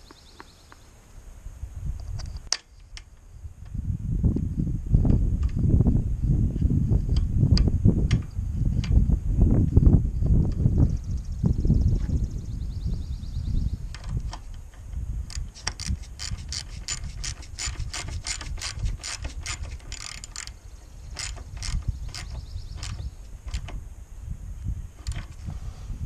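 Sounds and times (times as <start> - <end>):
ratchet wrench clicking: 15.3 - 23.8.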